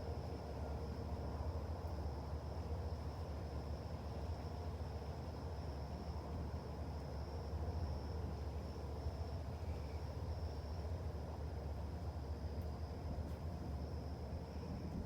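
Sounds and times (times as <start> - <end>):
insects trilling: 3.2 - 11.9.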